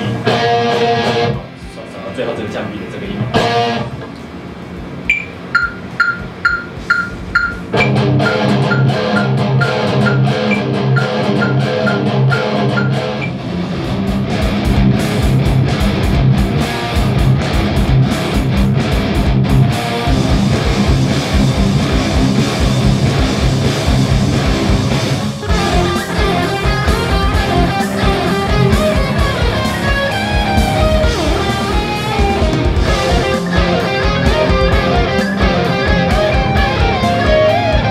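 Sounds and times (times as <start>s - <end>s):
electric guitar playing low riff: 0.0s - 1.8s, 3.1s - 37.9s
metronome ticking: 5.1s - 13.4s.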